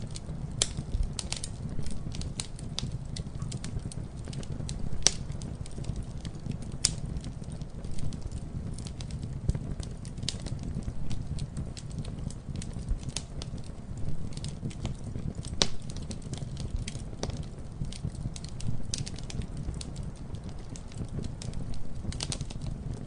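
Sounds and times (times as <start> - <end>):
burning wood crackling and popping: 0.0 - 23.0
campfire flame rumble: 0.0 - 23.0.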